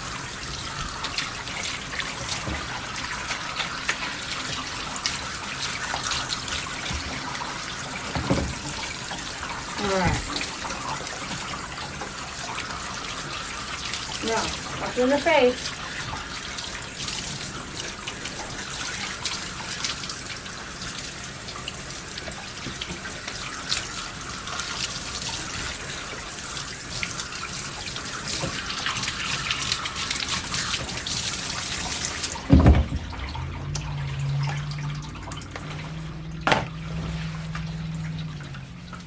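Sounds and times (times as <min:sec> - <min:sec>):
water spraying on dog's coat: 0:00.0 - 0:39.0
loud low thump: 0:36.4 - 0:36.8.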